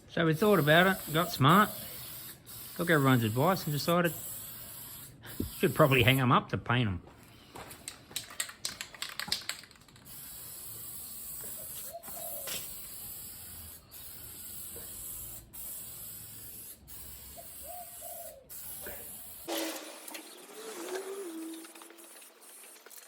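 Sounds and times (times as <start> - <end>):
paint spray hissing: 0.4 - 6.2, 9.7 - 23.0.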